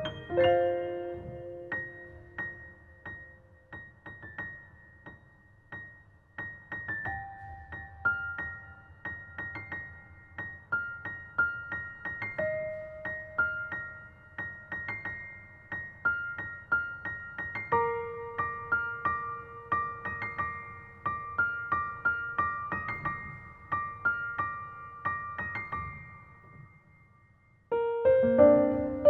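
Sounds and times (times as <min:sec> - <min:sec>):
slow sparse piano melody: 0:00.0 - 0:29.0.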